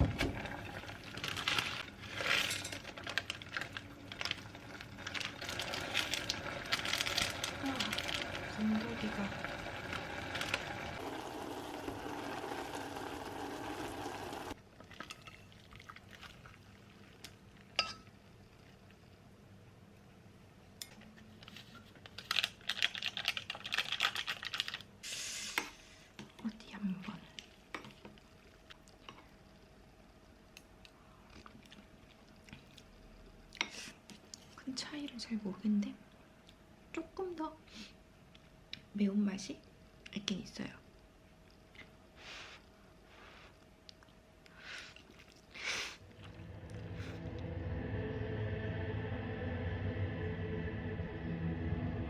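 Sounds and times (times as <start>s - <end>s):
plastic packaging crinkling: 0.8s - 9.0s, 22.0s - 24.9s.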